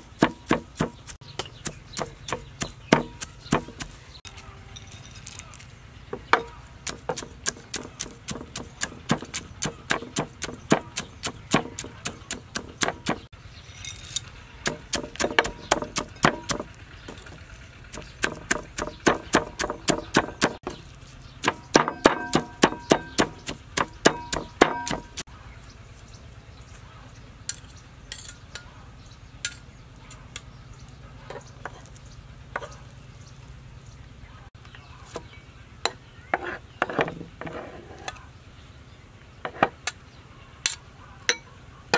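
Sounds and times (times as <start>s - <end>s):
knife chopping on cutting board: 0.2s - 3.9s.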